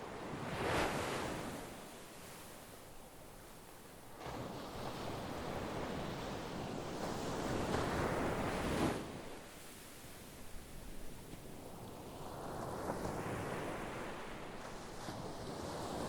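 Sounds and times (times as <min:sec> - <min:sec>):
soft surf wash: 0:00.0 - 0:16.0.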